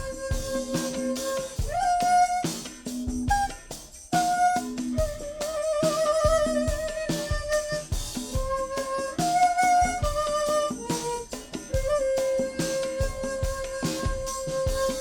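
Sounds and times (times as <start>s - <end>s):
instrumental melody of long held notes: 0.0s - 15.0s.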